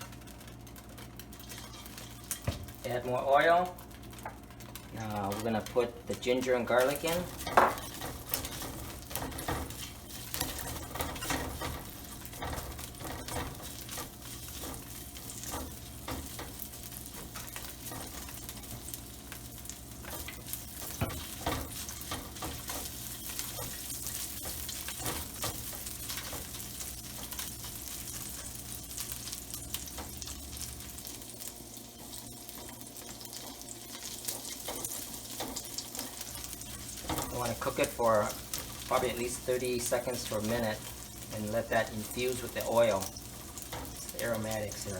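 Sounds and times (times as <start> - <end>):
food sizzling in hot oil: 0.0 - 44.9
stirring clicks and scrapes: 3.7 - 44.9.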